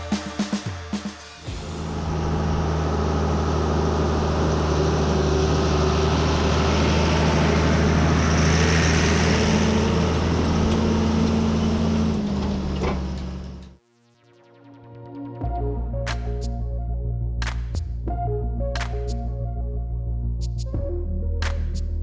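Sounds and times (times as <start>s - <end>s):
heavy machinery engine running: 1.4s - 13.8s.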